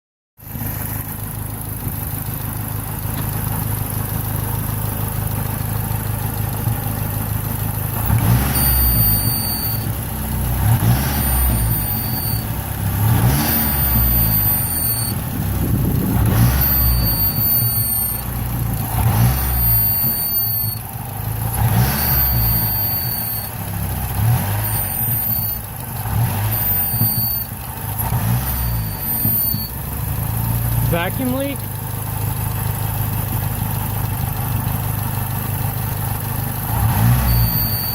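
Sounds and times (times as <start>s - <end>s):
car engine idling and revving: 0.4s - 37.9s
high-pitched whistle: 8.4s - 9.9s, 11.3s - 12.5s, 13.4s - 15.2s, 16.3s - 18.3s, 19.4s - 20.8s, 21.8s - 23.6s, 24.6s - 25.7s, 26.5s - 27.6s, 28.4s - 29.8s, 37.0s - 37.9s.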